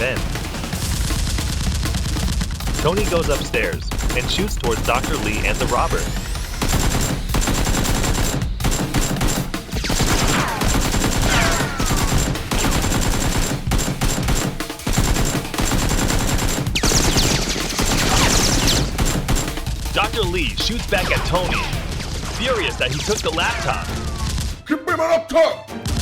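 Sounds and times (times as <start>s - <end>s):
machine-gun bursts: 2.0s - 20.1s.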